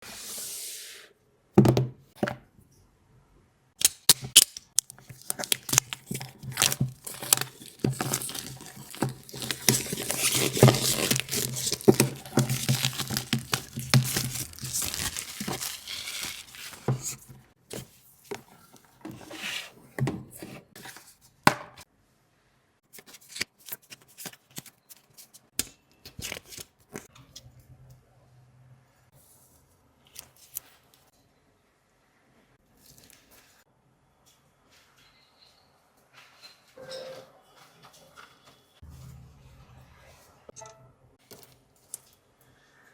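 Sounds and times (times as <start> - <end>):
wrapping tearing and crinkling: 3.8 - 17.3.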